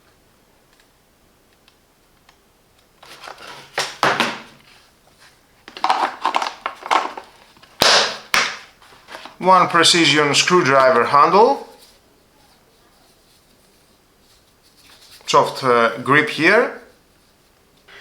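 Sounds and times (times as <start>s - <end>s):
hand tools clattering in plastic case: 5.7s - 7.4s.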